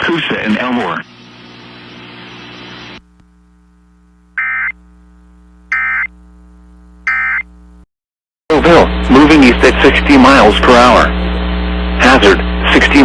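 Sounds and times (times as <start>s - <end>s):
faint steady hum: 1.0s - 7.8s
digital data tone bursts: 4.4s - 4.8s, 5.7s - 6.1s, 7.1s - 7.5s.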